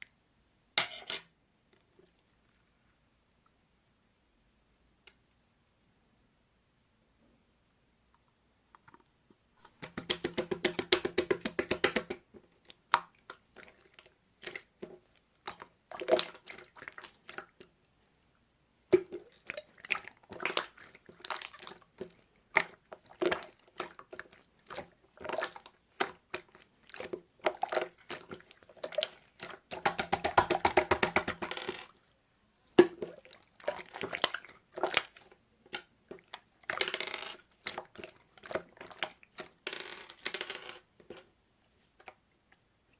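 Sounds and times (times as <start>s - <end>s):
wet slime squishes: 9.8s - 17.8s, 18.9s - 36.8s, 37.4s - 39.6s.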